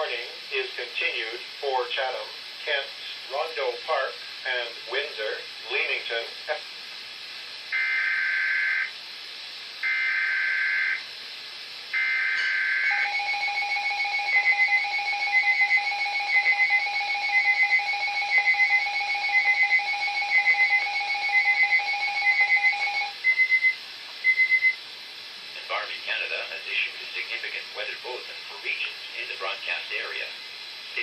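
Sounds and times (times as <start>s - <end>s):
rapid beeping: 12.0s - 24.8s
warbling data tone bursts: 12.0s - 24.8s.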